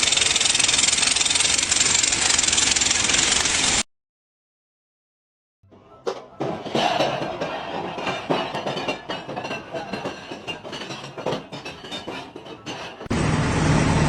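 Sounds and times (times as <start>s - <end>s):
metallic clinking and knocking: 6.1s - 13.1s.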